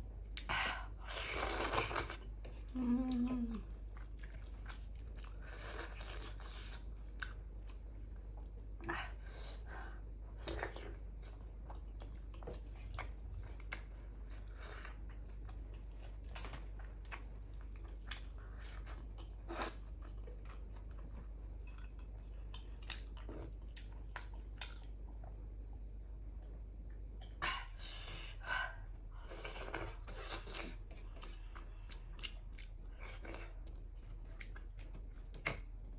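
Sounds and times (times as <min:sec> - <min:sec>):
chewing and biting: 0:10.4 - 0:25.3, 0:29.3 - 0:35.8.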